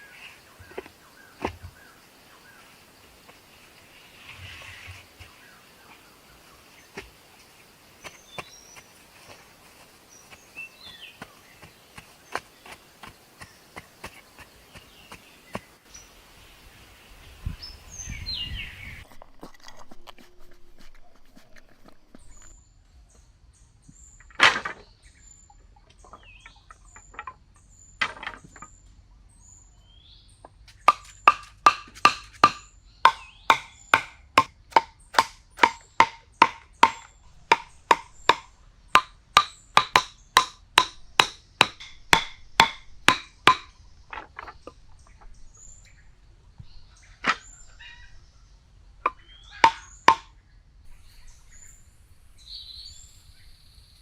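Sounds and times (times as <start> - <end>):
sharp ringing knocks: 30.9 - 43.8, 49.1 - 50.3.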